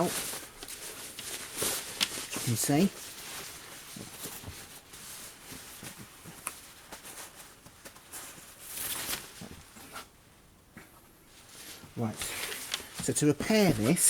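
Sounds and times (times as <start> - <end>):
fabric rustling: 0.0 - 10.5, 11.2 - 14.0.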